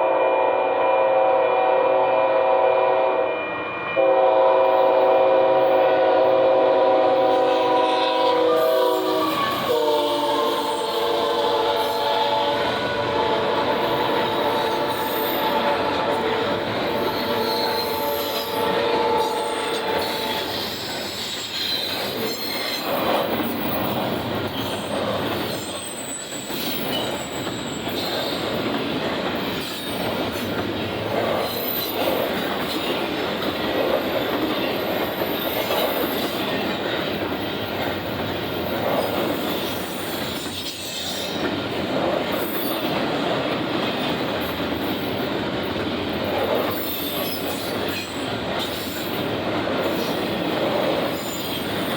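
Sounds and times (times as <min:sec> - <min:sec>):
locomotive horn: 0:00.0 - 0:20.8
train cars rumbling and clattering: 0:04.0 - 0:51.9
wheel squeal: 0:24.5 - 0:28.5.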